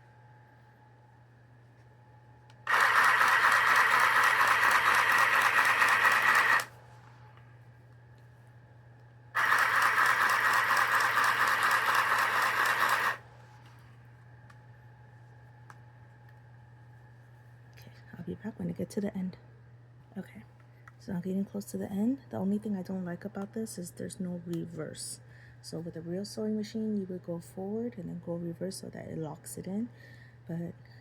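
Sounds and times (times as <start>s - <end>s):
sewing machine buzzing: 2.7s - 6.7s, 9.4s - 13.2s.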